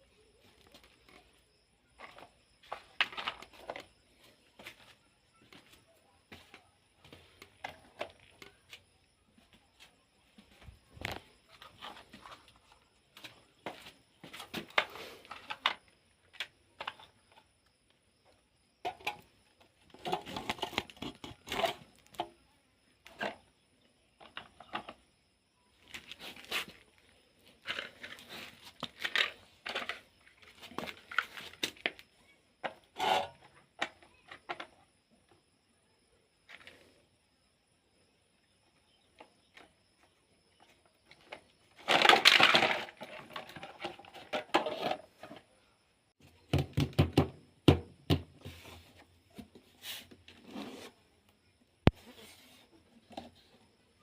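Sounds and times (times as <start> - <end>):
plastic toys clicking and rattling: 41.2 - 45.4.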